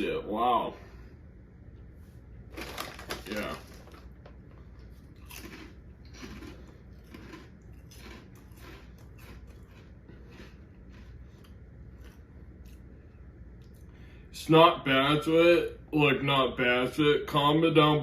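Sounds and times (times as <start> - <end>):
person chewing crunchy snacks: 2.5 - 13.9.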